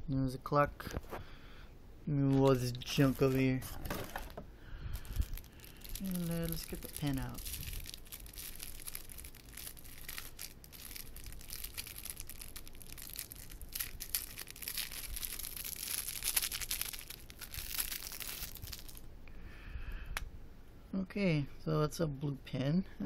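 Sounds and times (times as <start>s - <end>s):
packaging crinkling and tearing: 2.4s - 4.4s, 5.0s - 19.0s.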